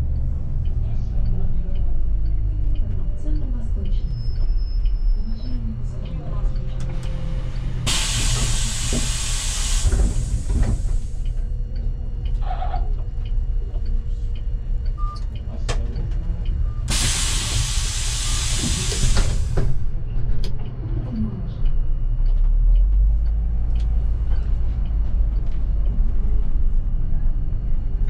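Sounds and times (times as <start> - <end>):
bus engine rumble: 0.0 - 28.0
air brakes hissing: 7.3 - 11.2, 16.8 - 19.9.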